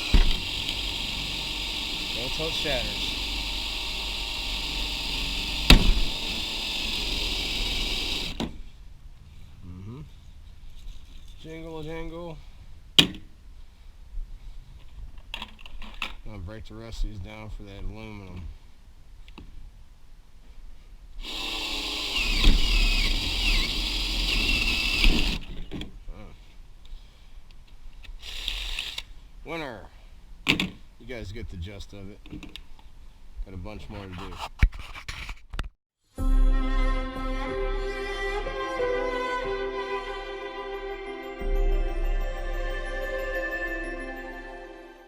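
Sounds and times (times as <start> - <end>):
power tool high squeal: 0.0 - 4.4
power drill boring: 0.0 - 8.4, 21.2 - 25.5, 28.2 - 29.0.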